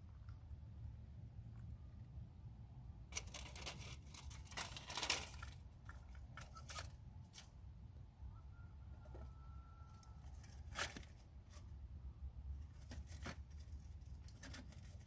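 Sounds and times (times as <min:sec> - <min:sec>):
rustling and crinkling: 0:03.1 - 0:07.6, 0:09.9 - 0:11.8, 0:12.5 - 0:15.0.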